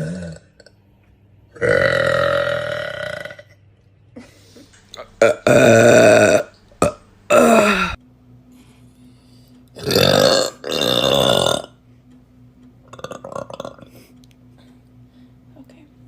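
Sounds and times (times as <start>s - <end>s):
woman burping loudly: 0.0s - 0.8s, 1.6s - 3.6s, 4.9s - 8.0s, 9.8s - 11.8s, 12.9s - 13.9s.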